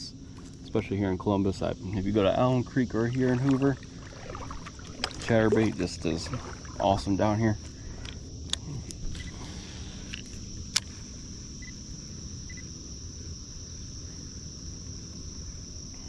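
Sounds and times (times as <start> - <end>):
insects droning high-pitched: 0.0 - 16.0
light clicks: 10.1 - 10.9.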